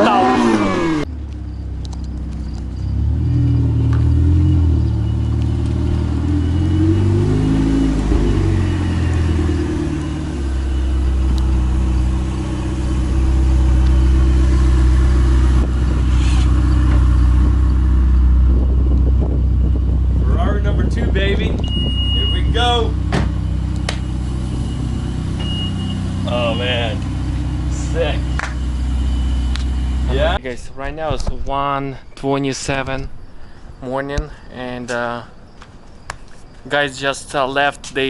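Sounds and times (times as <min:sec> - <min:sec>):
sports car engine revving: 0:00.0 - 0:30.4.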